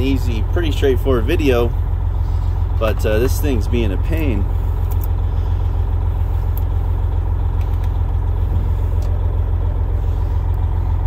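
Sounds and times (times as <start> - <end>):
diesel engine idling: 0.0 - 11.0.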